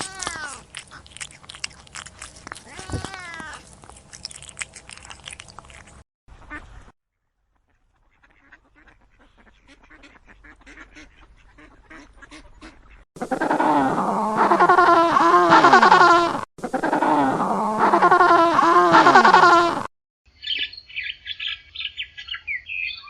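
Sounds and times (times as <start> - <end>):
ducks quacking: 6.3 - 6.9, 7.6 - 19.9.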